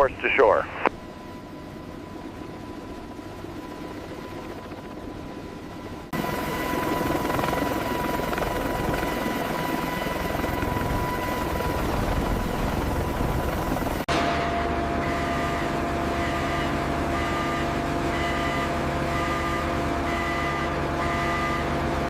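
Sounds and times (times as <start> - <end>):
heavy machinery drone with whine: 6.2 - 22.0.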